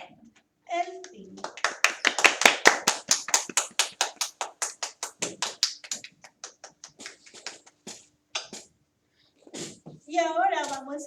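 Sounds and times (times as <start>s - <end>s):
hand clapping: 1.0s - 8.6s.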